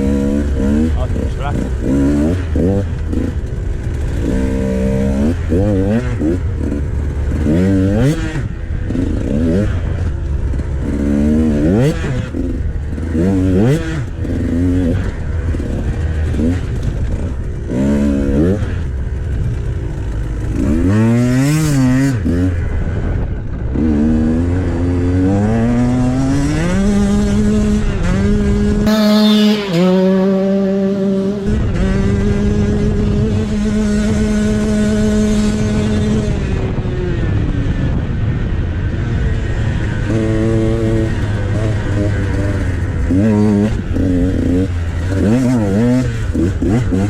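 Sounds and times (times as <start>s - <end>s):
dirt bike engine revving: 0.0s - 47.0s.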